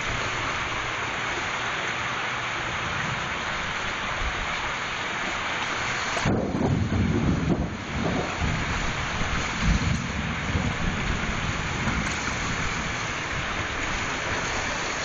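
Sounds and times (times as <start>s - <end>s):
steady rain: 0.0s - 15.0s
wind: 0.0s - 15.0s
thunder rumbles: 6.2s - 14.9s.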